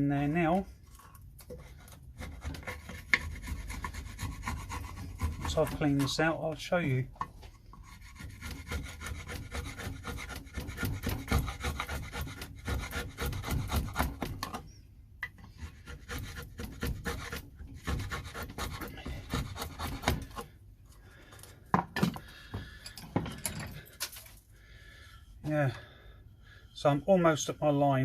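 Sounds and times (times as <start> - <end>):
hand tool scraping wood: 0.3 - 14.6, 15.3 - 24.3.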